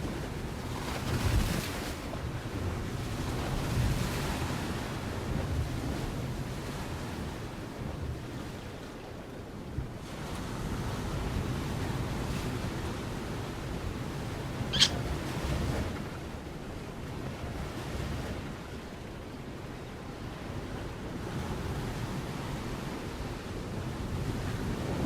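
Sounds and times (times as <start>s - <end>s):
short high-pitched chirp: 14.7s - 15.0s
wind buffeting microphone: 20.0s - 25.0s.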